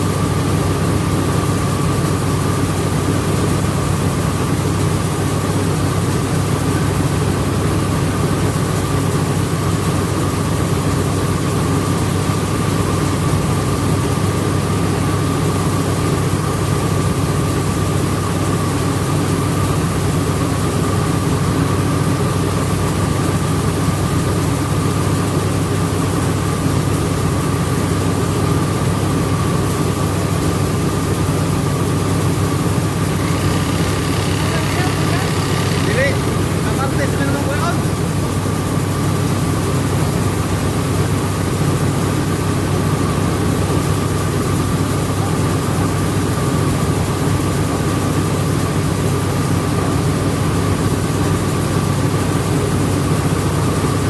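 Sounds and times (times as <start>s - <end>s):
milling machinery drone: 30.2s - 39.0s
high whine: 32.7s - 37.9s.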